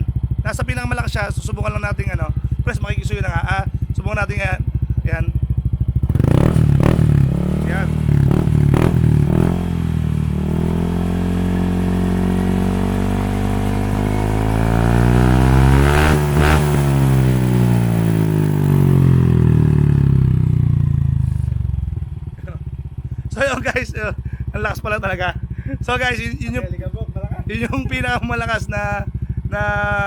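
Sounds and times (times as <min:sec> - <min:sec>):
loud scooter engine revving: 0:04.7 - 0:24.6.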